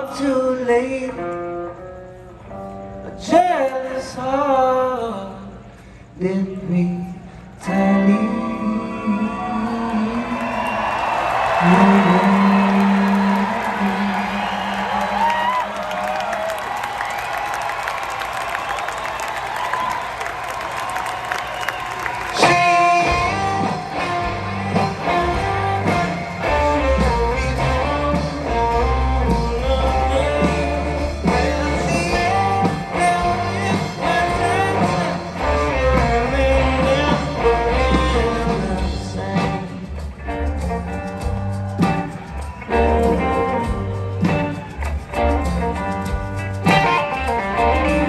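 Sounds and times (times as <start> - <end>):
blues-rock band playing: 17.2 - 48.0.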